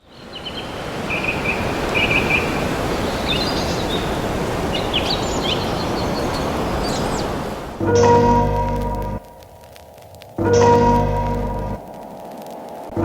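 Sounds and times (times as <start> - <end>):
birds chirping: 0.0 - 7.7
steady rushing noise: 6.5 - 13.0.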